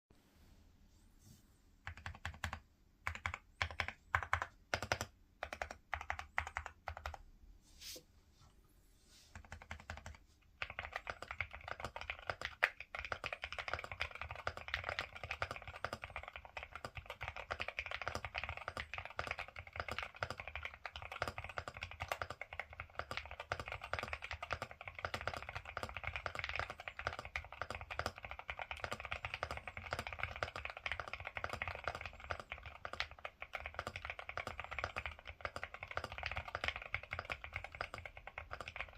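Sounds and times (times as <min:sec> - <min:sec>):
mechanical keyboard typing: 0:01.8 - 0:07.2, 0:09.4 - 0:38.9.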